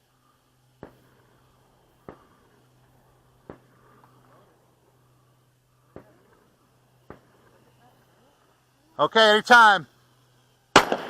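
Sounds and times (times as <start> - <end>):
steady low hum: 0.0 - 11.0
gunshots: 10.7 - 11.0.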